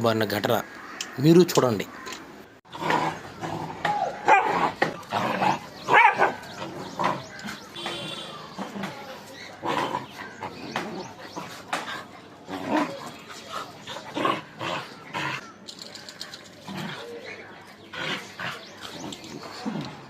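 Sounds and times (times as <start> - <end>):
dog barking: 5.9 - 6.4.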